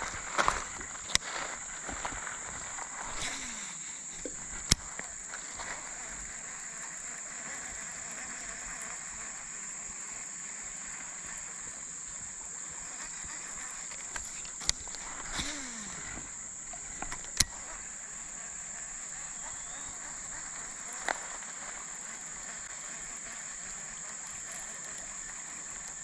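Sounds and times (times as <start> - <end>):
insect drone: 0.0 - 26.0
sharp clicks: 2.7 - 5.4, 13.7 - 17.8.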